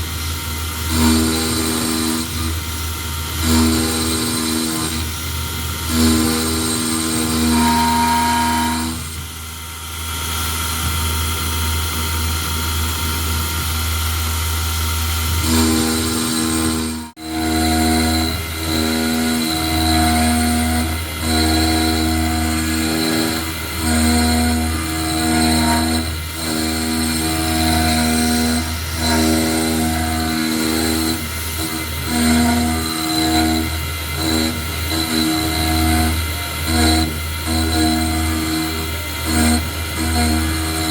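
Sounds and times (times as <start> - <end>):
milling machine humming: 0.0 - 40.9
milling machine whine: 0.0 - 40.9
motor whine changing pitch: 7.2 - 9.2.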